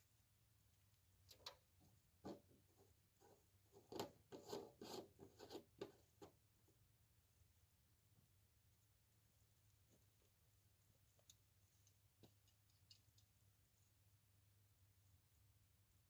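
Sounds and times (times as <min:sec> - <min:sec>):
faint scraping and rustling: 0:00.0 - 0:06.8.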